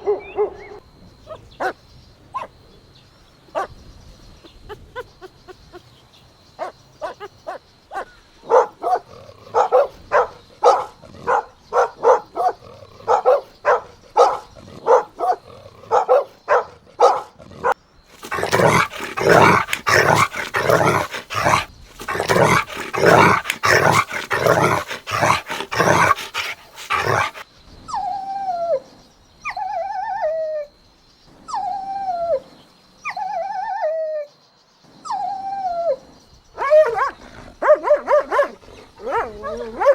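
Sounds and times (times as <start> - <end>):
puppies yapping: 18.2 - 27.4.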